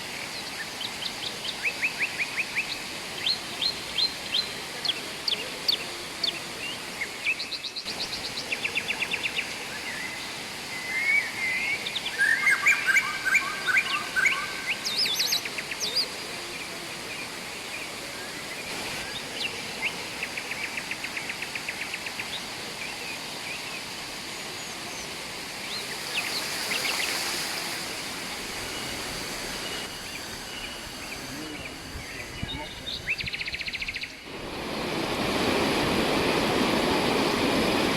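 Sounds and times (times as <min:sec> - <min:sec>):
river water rushing: 0:22.3 - 0:31.8, 0:34.2 - 0:37.9
birds chirping and trilling: 0:28.6 - 0:34.3.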